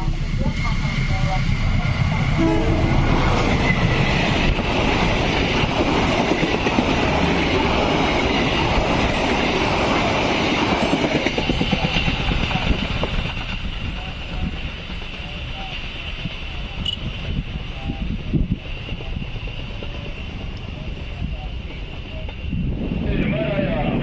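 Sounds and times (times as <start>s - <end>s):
train wheels clattering over rails: 3.1s - 17.4s.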